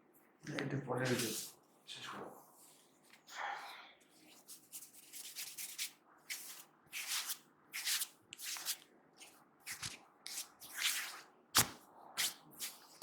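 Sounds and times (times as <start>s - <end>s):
hands rubbing hair: 1.0s - 1.6s, 4.2s - 13.0s.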